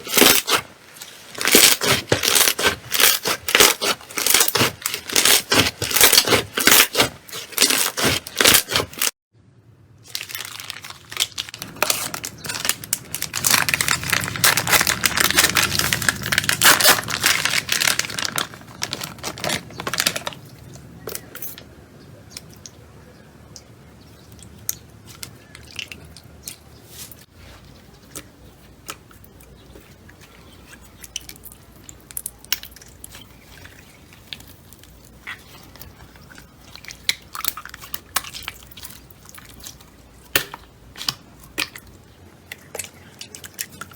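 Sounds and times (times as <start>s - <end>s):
slime crackling and popping: 10.0s - 20.3s.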